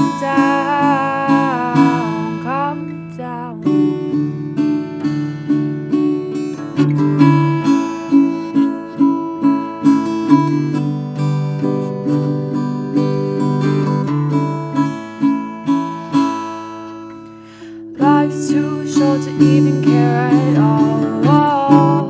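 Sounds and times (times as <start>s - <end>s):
acoustic guitar strumming chords: 0.0s - 22.0s.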